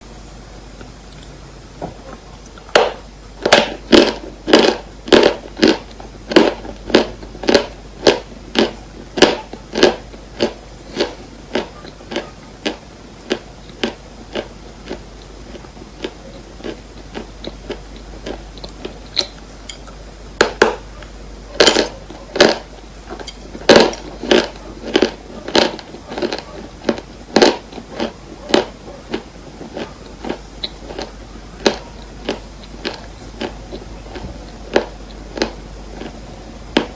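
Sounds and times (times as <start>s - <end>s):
chalk crunching: 20.4s - 36.9s.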